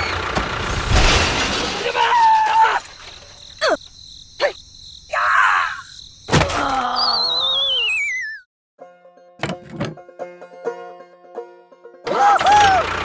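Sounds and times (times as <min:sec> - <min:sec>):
warbling falling whistle: 0:00.0 - 0:00.2, 0:07.0 - 0:08.5
cartoon falling whistles: 0:00.0 - 0:00.3, 0:06.8 - 0:08.5.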